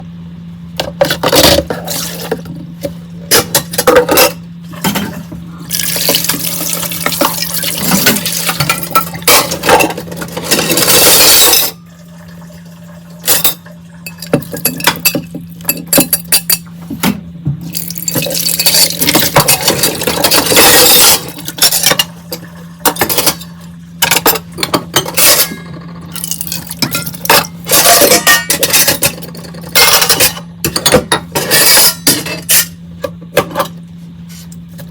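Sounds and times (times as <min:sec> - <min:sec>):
steady low hum: 0:00.0 - 0:34.9
tap water running: 0:05.7 - 0:09.7
dishes clinking in a sink: 0:13.2 - 0:17.2, 0:18.1 - 0:33.8.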